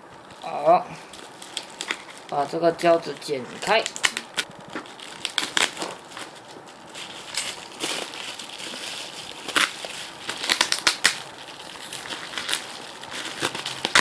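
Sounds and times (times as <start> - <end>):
plastic wrap crinkling: 0.2 - 14.0
scissors cutting tape: 13.2 - 14.0.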